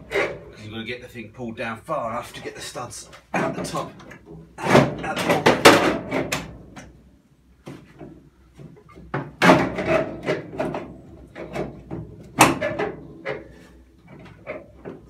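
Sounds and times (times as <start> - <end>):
pedal box clunking and scraping: 0.0 - 0.7, 3.4 - 7.0, 7.6 - 15.0
loud knocks: 4.6 - 6.6, 9.0 - 13.0.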